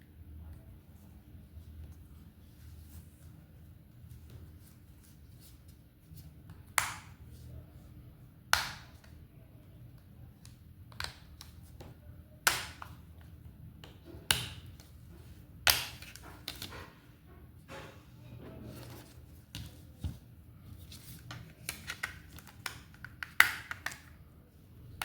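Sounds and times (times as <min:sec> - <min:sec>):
low steady hum: 0:00.0 - 0:25.0.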